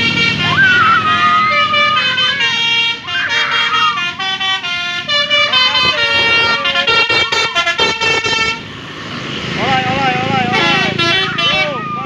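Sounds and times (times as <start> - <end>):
musical bus horn playing a tune: 0.0 - 8.7, 10.4 - 11.8.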